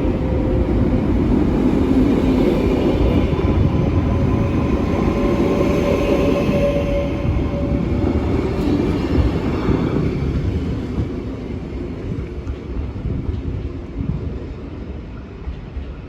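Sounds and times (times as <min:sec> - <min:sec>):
electric train traction whine: 0:00.0 - 0:11.0
train running rumble: 0:00.0 - 0:16.0.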